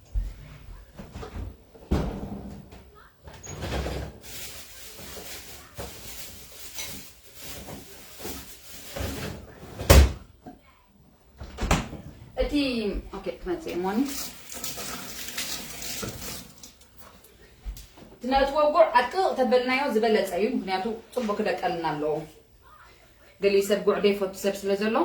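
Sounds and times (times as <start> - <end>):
kitchen knocks and clatters: 0.1 - 10.6, 11.4 - 18.6.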